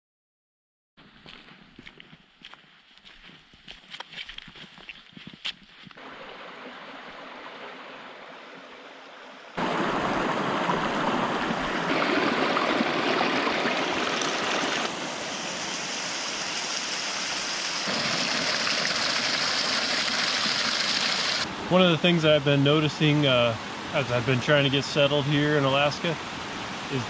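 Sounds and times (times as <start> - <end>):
mountain stream rushing: 6.0 - 27.0.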